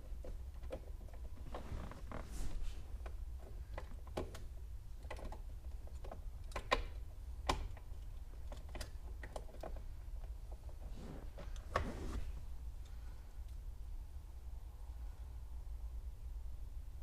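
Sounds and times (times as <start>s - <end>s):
small clicks and taps: 0.0s - 1.6s, 3.0s - 10.8s
low steady hum: 0.0s - 17.0s.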